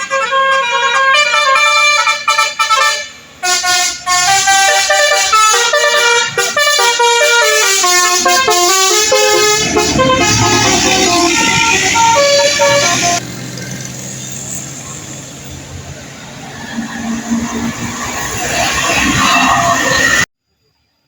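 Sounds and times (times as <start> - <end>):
multi-note bus air horn tune: 0.0 - 13.2
vehicle rumble: 3.1 - 20.3.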